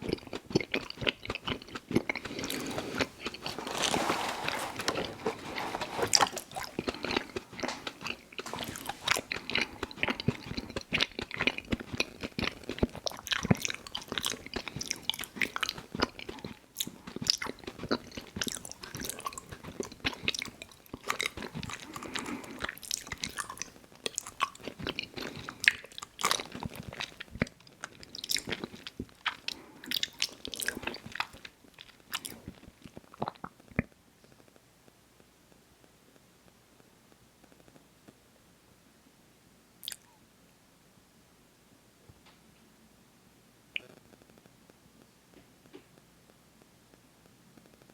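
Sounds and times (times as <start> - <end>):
chewing and mouth sounds: 0.0 - 33.9, 39.8 - 40.2.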